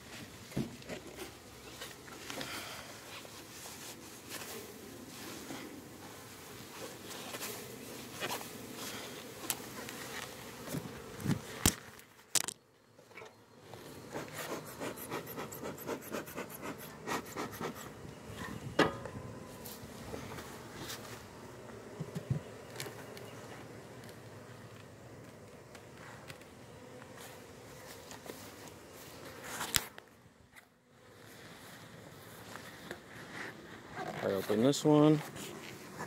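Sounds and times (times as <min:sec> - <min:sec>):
honeybees buzzing: 0:00.1 - 0:36.0
hive parts scraping and clicking: 0:09.3 - 0:13.4, 0:22.0 - 0:23.4, 0:28.0 - 0:30.7.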